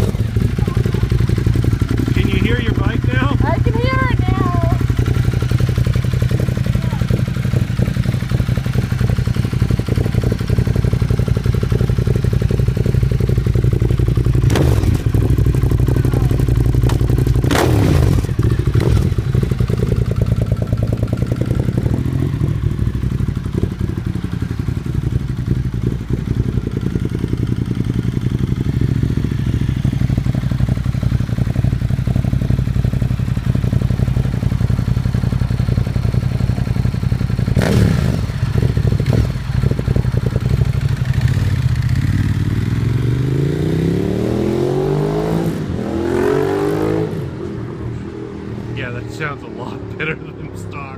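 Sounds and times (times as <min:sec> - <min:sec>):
motorcycle engine idling: 0:00.0 - 0:43.8
motorcycle throttle blip: 0:16.7 - 0:17.6.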